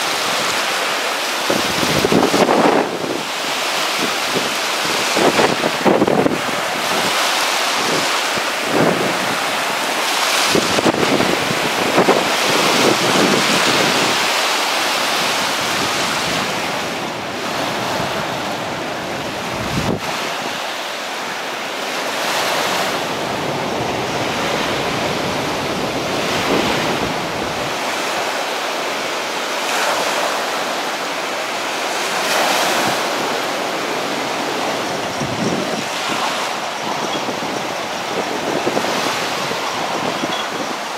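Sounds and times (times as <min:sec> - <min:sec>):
surf on the shore: 0:00.0 - 0:40.9
wind buffeting microphone: 0:01.4 - 0:14.4, 0:15.0 - 0:20.7, 0:22.2 - 0:28.4, 0:31.9 - 0:40.9.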